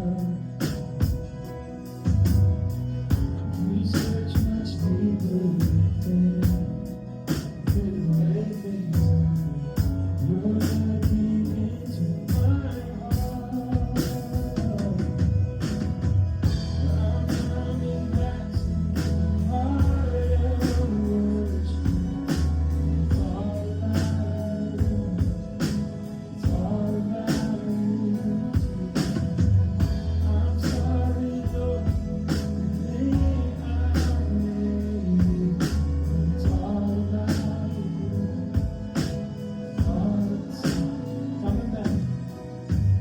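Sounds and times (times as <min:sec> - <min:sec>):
drum kit steady beat: 0:00.0 - 0:43.0
person singing: 0:00.0 - 0:43.0
sustained bass notes: 0:00.0 - 0:43.0.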